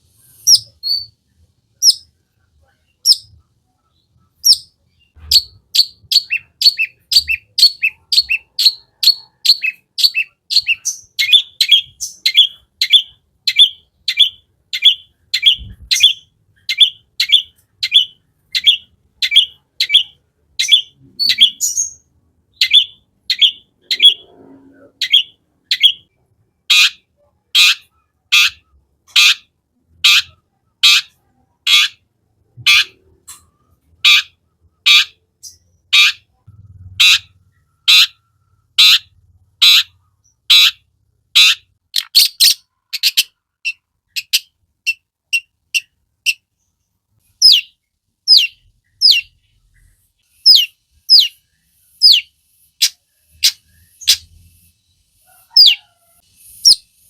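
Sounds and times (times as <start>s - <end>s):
shrike chirping: 50.3s - 54.4s.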